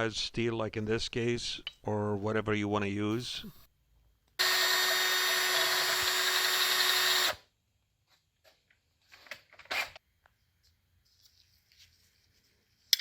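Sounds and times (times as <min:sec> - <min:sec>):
electric power tool running: 0:04.4 - 0:07.4.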